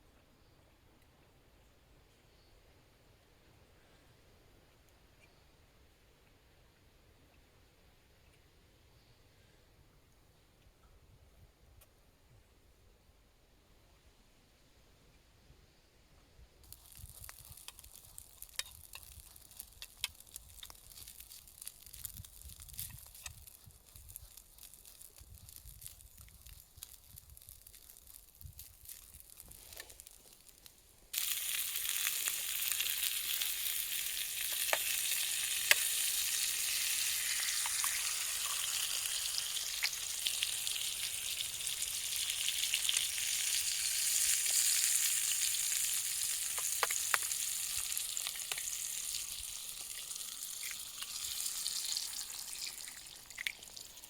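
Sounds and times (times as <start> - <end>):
faint clicks and crackles: 16.6 - 36.8, 42.7 - 54.0
food sizzling in frying pan: 16.7 - 54.0.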